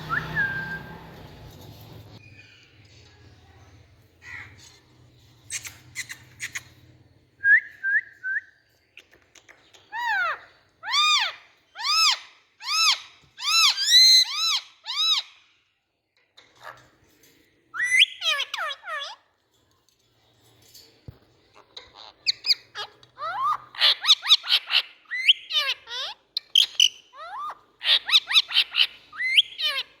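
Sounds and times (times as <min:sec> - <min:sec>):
parakeet calling: 0:21.9 - 0:30.0.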